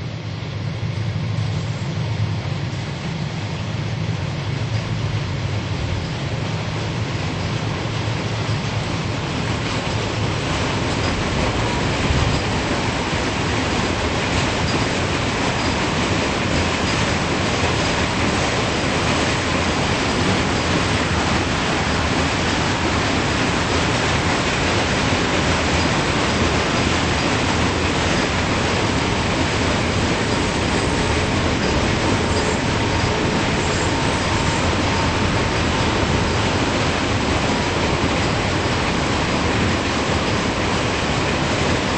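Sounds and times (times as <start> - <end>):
train wheels rumbling on rail: 0.0 - 41.9
thin wheel squeal: 30.1 - 36.3.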